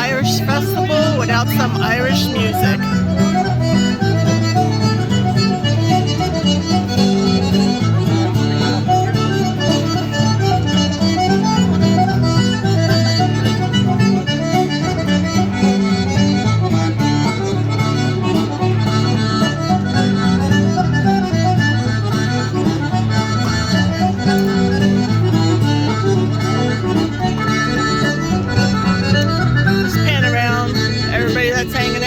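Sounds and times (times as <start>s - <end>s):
folk tune with quick notes: 0.0s - 32.0s
sustained low accompaniment: 22.0s - 32.0s.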